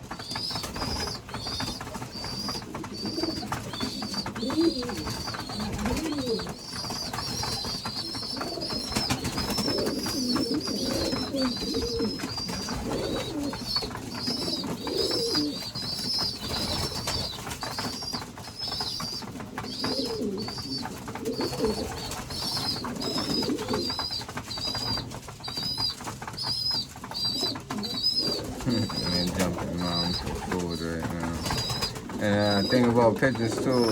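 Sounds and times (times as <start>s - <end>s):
pigeons cooing: 0.0s - 33.9s
young pigeons squeaking: 0.0s - 33.9s.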